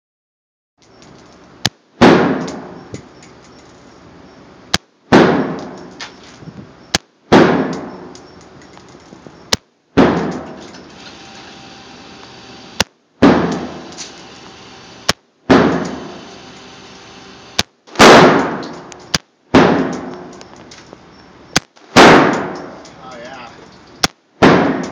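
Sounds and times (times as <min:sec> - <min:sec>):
rifle shots ringing: 0:12.6 - 0:14.4, 0:15.0 - 0:20.4, 0:21.8 - 0:22.8, 0:24.4 - 0:24.9.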